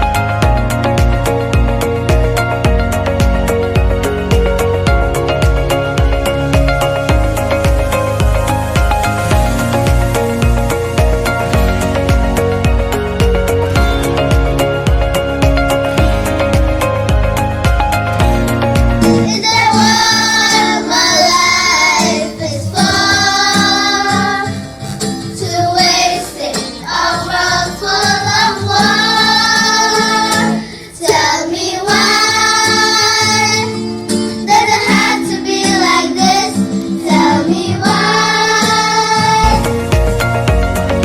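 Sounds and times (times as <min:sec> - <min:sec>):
backing track with guitar: 0:00.0 - 0:41.0
children singing together: 0:19.1 - 0:39.8.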